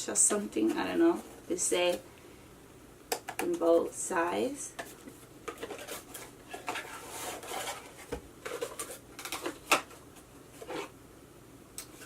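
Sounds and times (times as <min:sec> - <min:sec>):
packaging rustling: 0:04.9 - 0:10.0.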